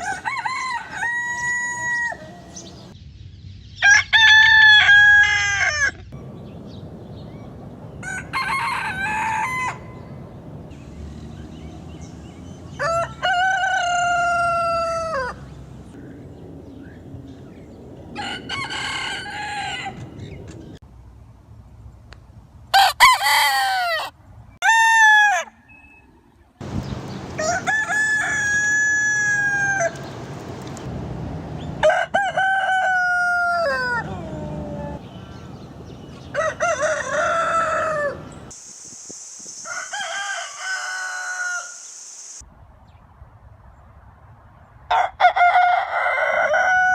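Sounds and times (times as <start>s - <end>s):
roosters crowing: 0.0s - 3.0s, 3.8s - 6.2s, 7.8s - 10.3s, 10.9s - 15.8s, 18.1s - 20.6s, 22.7s - 25.7s, 27.0s - 30.3s, 31.7s - 38.6s, 39.6s - 41.9s, 44.9s - 46.9s.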